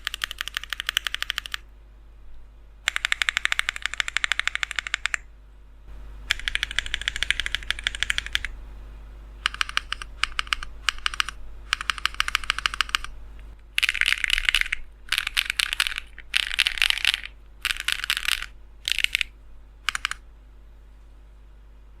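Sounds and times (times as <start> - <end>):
mechanical keyboard key clacks: 2.9 - 5.2, 6.3 - 8.5, 9.5 - 13.1, 13.8 - 19.3, 19.9 - 20.2.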